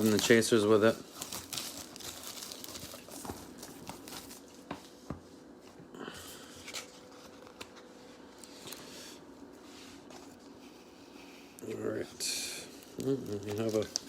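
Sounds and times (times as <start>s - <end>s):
plastic packaging handled: 0.0s - 5.0s, 12.5s - 14.0s
rustling of cardboard boxes: 0.0s - 5.2s, 12.7s - 14.0s.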